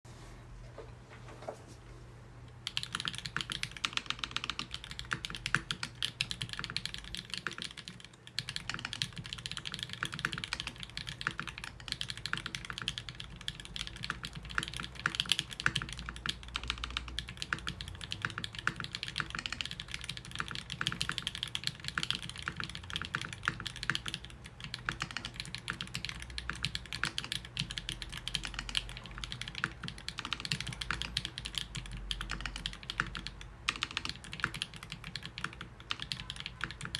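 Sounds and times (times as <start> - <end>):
mechanical keyboard typing: 2.6 - 36.9.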